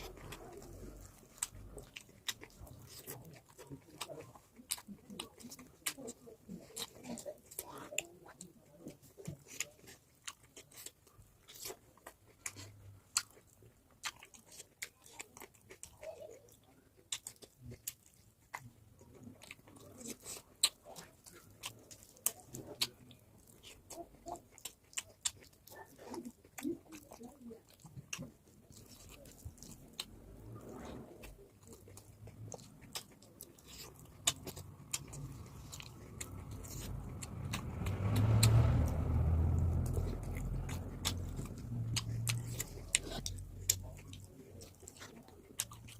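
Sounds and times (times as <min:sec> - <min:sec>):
person chewing crunchy food: 0:00.0 - 0:45.9
low rumble: 0:35.2 - 0:43.7.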